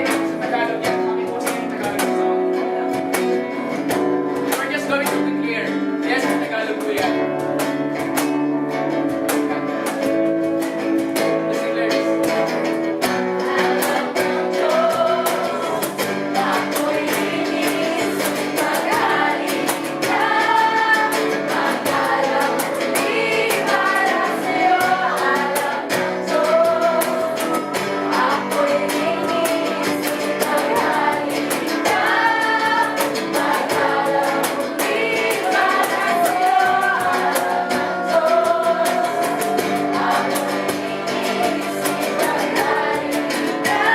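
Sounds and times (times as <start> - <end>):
guitar and instruments: 0.0 - 43.9
voices singing slow song: 13.4 - 43.9.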